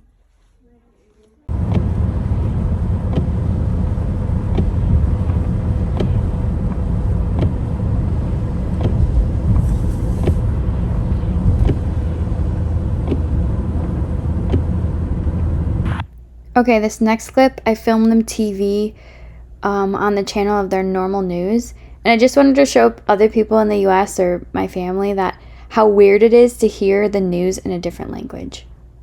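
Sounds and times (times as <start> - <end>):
car road and engine rumble: 1.4 - 16.0.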